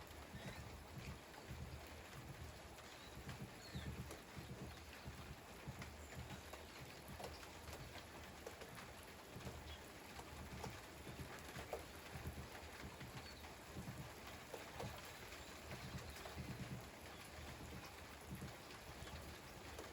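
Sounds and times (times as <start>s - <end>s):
light rain hiss: 0.0s - 19.9s
raindrops tapping on hard surface: 0.0s - 19.9s.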